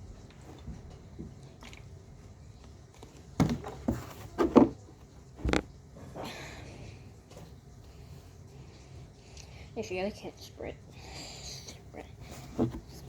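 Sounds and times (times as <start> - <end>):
handling knocks and taps: 3.0 - 5.7, 12.2 - 13.0.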